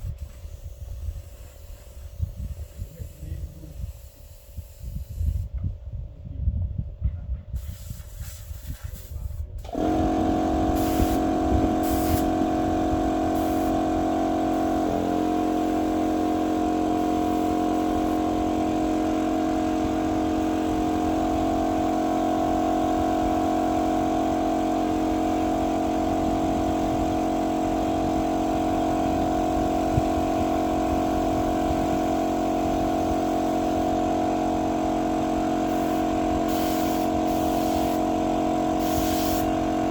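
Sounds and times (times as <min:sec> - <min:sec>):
machine motor humming: 0:09.6 - 0:39.9.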